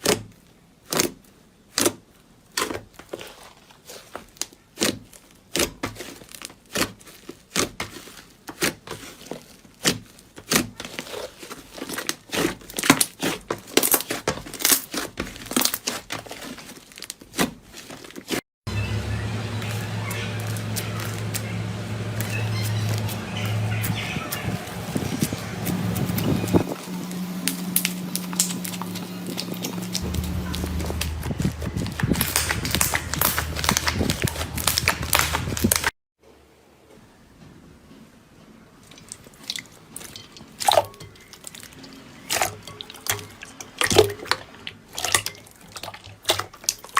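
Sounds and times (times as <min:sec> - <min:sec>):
slime squishing and crackling: 0:00.0 - 0:18.4, 0:24.7 - 0:35.9
steady low hum: 0:18.7 - 0:35.9
slime crackling and popping: 0:27.4 - 0:35.9.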